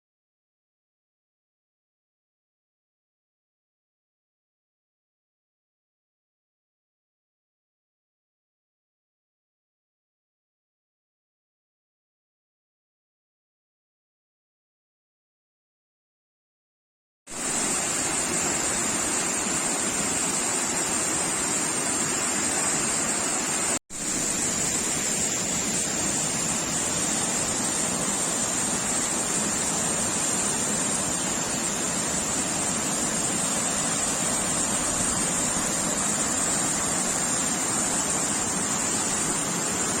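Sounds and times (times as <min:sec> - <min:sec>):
waterfall rushing and splashing: 0:17.4 - 0:40.0.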